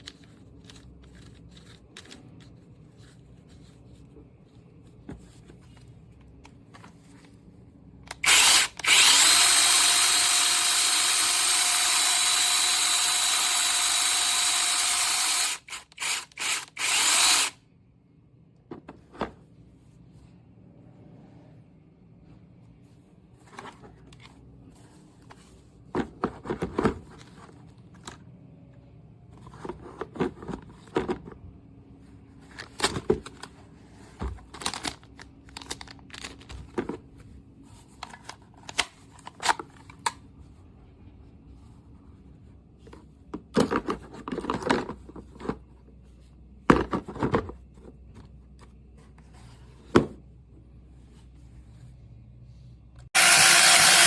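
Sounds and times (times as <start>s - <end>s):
clicks and scrapes of parts handled: 0.0s - 3.8s, 32.4s - 40.2s.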